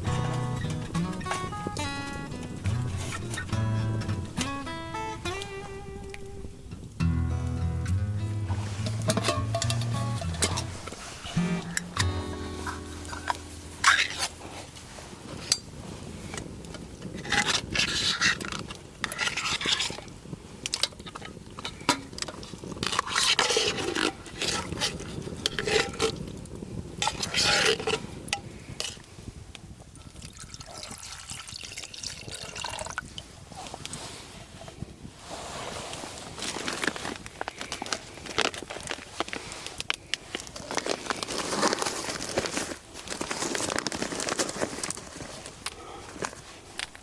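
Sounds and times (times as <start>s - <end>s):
utensil scraping in a pan: 8.4s - 20.0s.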